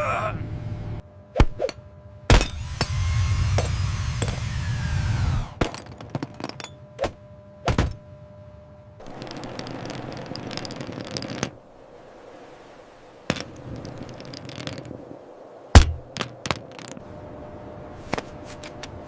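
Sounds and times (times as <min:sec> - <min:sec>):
clattering: 0:13.3 - 0:15.0, 0:15.8 - 0:17.0
sharp knocks: 0:15.8 - 0:17.0.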